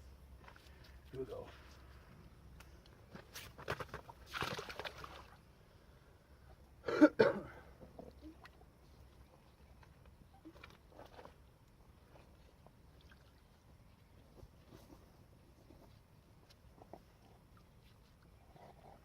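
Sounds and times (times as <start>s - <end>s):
water splashing and sloshing: 3.0s - 5.9s, 7.8s - 18.8s.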